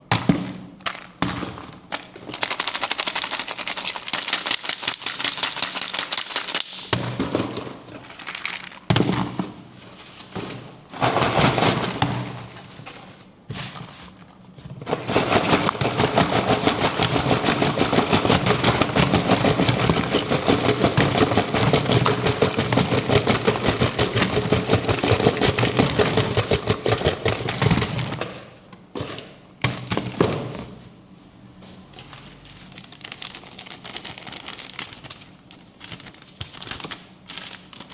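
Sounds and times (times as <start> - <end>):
wrappers crinkling: 1.8 - 6.9, 7.8 - 11.7, 31.8 - 37.9.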